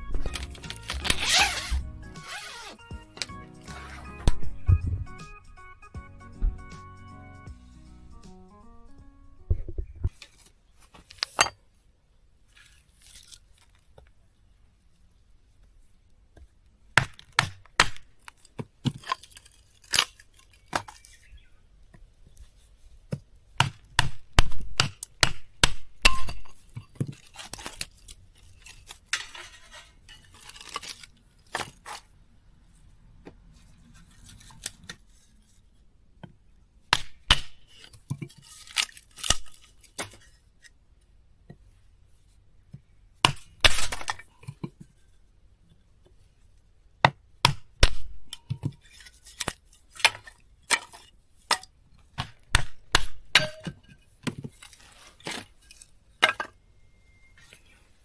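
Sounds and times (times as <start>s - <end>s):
hard objects clinking and knocking: 0.0s - 4.7s.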